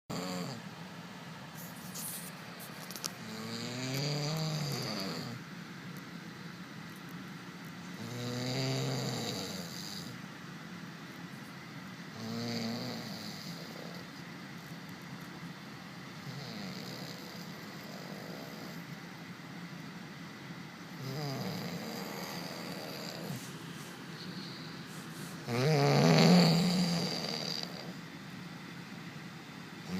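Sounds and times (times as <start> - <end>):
man snoring: 0.1 - 0.6, 3.2 - 5.4, 8.0 - 10.2, 12.2 - 14.1, 16.2 - 18.8, 20.9 - 23.5, 25.4 - 28.0.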